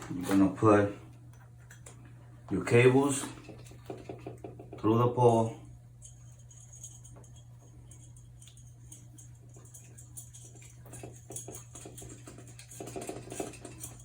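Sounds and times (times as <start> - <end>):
steady low hum: 0.0 - 14.0
clicks and rustles of wires: 8.2 - 14.0.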